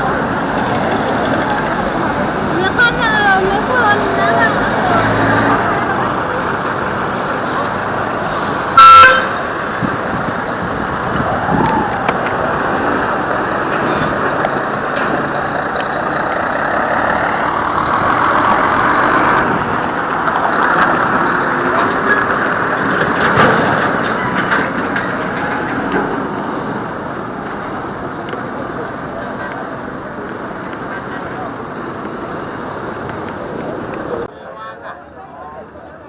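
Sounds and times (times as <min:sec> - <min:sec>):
road traffic noise: 0:00.0 - 0:36.0.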